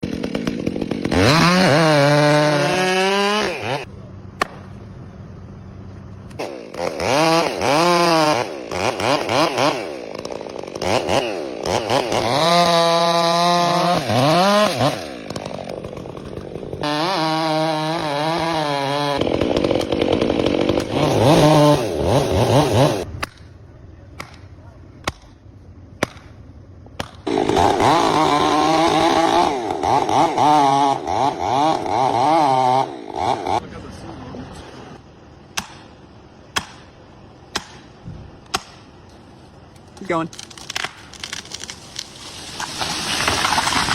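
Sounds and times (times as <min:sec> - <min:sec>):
chainsaw revving: 0:00.0 - 0:03.9, 0:06.4 - 0:23.1, 0:27.2 - 0:33.7, 0:42.5 - 0:43.9.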